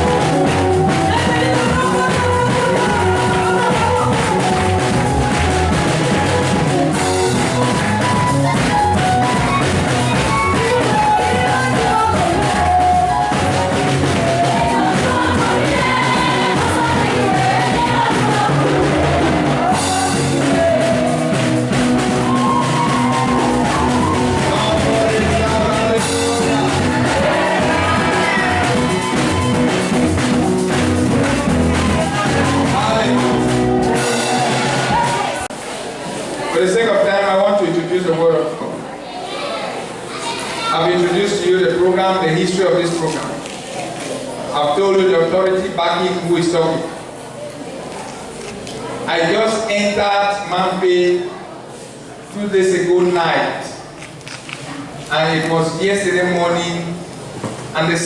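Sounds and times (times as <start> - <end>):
gospel voices singing: 0.0 - 35.5
band with drums: 0.0 - 36.3.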